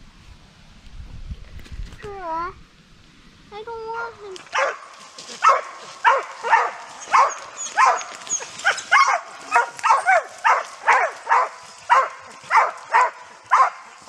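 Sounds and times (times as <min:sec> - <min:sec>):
hounds barking: 0:04.5 - 0:14.0.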